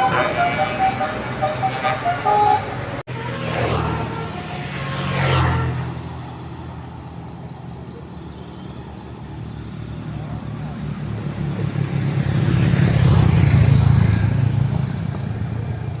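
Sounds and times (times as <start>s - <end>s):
bus horn playing a tune: 0.0s - 6.1s
bus engine passing: 0.0s - 16.0s
distant traffic hum: 0.0s - 16.0s.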